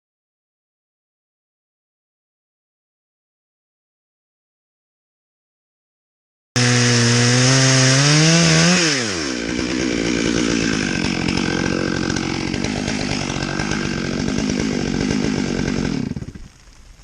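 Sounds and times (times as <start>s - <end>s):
chainsaw running: 6.6s - 16.6s.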